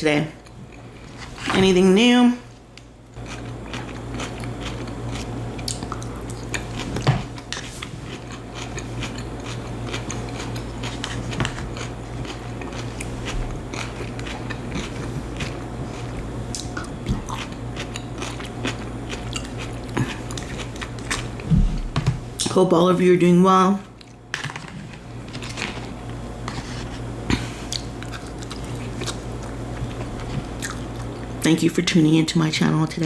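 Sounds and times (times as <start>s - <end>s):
steady low hum: 0.0s - 33.0s
person chewing food: 3.1s - 21.5s, 25.3s - 31.3s.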